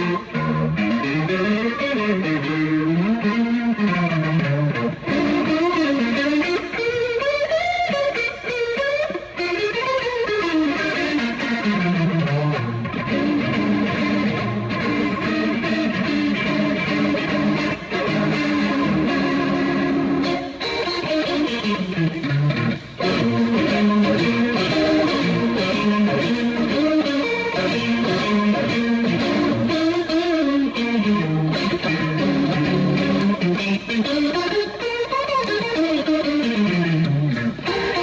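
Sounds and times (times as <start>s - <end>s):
electric guitar through rotating speaker: 0.0s - 38.0s.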